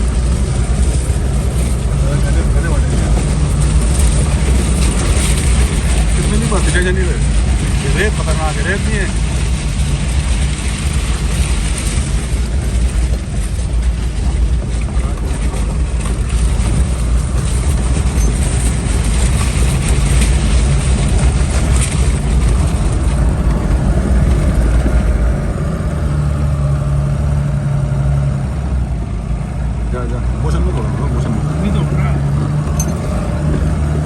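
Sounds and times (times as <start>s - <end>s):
off-road vehicle engine droning: 0.0s - 34.0s.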